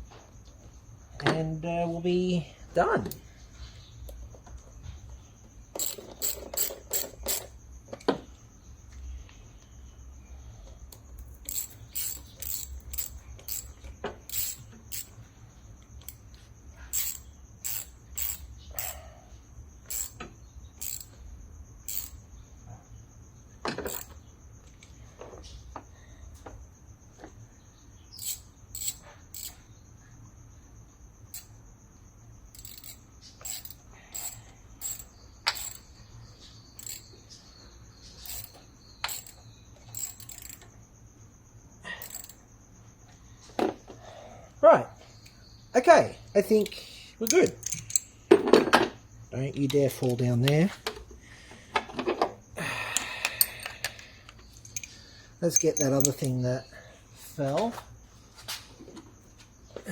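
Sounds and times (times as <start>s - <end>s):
metal tools clicking and clinking: 5.8s - 7.5s, 10.9s - 15.2s, 16.9s - 19.0s, 19.9s - 21.2s, 21.9s - 22.2s, 23.8s - 24.2s, 28.2s - 29.6s, 32.6s - 35.9s, 36.8s - 37.1s, 38.2s - 40.7s, 42.0s - 42.4s, 46.6s - 48.2s, 53.0s - 56.4s
ratchet clicking: 5.8s - 7.6s, 10.9s - 15.2s, 16.9s - 19.0s, 19.9s - 21.2s, 21.8s - 22.2s, 23.8s - 24.2s, 28.2s - 29.6s, 31.3s - 31.5s, 32.5s - 35.9s, 36.8s - 37.1s, 38.2s - 40.7s, 42.0s - 42.4s, 46.6s - 48.1s, 54.6s - 56.4s.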